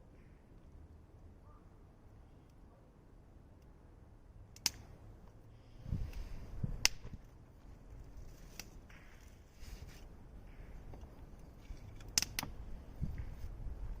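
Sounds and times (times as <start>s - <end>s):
wood fire crackling: 3.3s - 14.0s
fire popping: 4.5s - 14.0s.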